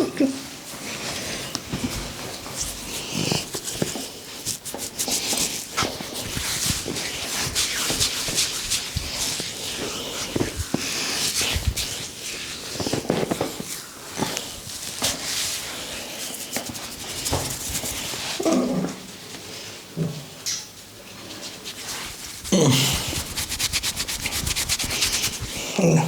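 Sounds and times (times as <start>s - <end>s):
hands rubbing hair: 0.8s - 18.4s, 21.4s - 25.9s
quick pats and slaps: 21.9s - 25.7s.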